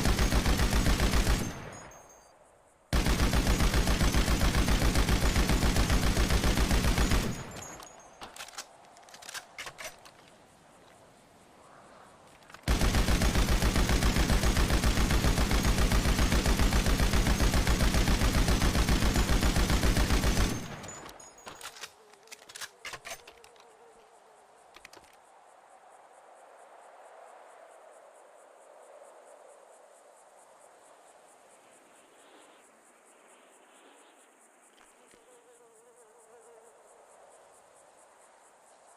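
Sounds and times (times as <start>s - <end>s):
machine gun firing: 0.0s - 2.0s, 2.9s - 7.9s, 12.6s - 21.1s
faint steady background: 0.0s - 38.9s.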